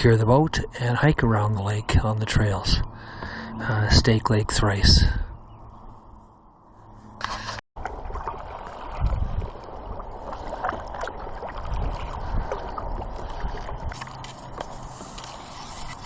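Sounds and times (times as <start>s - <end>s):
low rumbles: 0.0s - 7.2s
paddle splashing in water: 7.8s - 15.4s.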